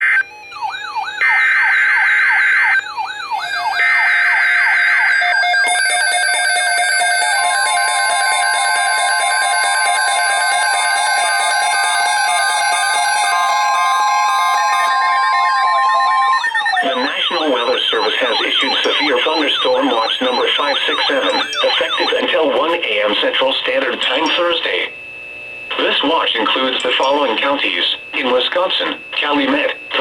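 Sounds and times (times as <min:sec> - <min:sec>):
rising and falling siren tones: 0:00.2 - 0:05.7, 0:13.4 - 0:22.4
steady alert tone: 0:16.8 - 0:22.9, 0:24.0 - 0:24.6, 0:26.4 - 0:27.5.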